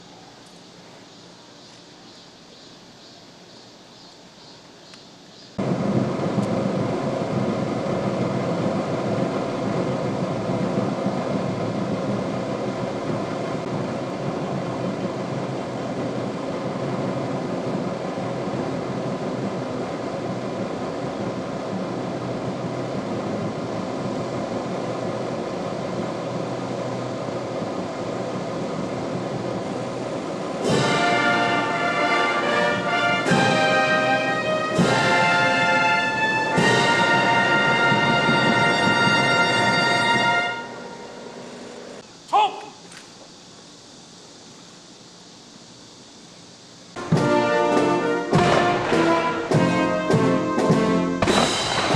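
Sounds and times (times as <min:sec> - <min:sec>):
military brass band music: 0:30.6 - 0:41.3, 0:47.0 - 0:51.9.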